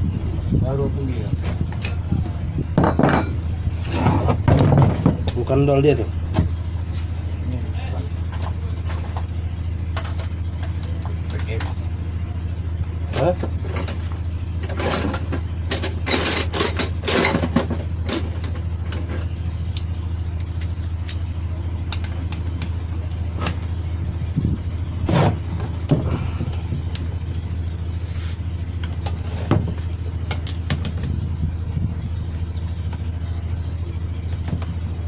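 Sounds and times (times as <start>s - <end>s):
low engine-like hum: 0.0s - 35.0s.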